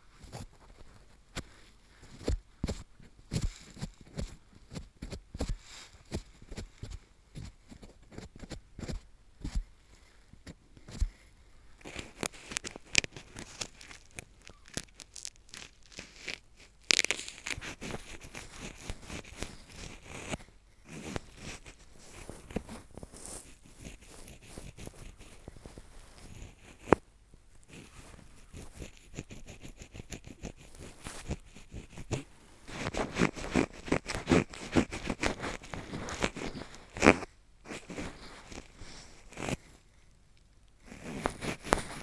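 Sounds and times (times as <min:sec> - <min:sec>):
ear pick scraping in an ear: 0:11.8 - 0:27.0, 0:27.6 - 0:39.8, 0:40.9 - 0:42.0.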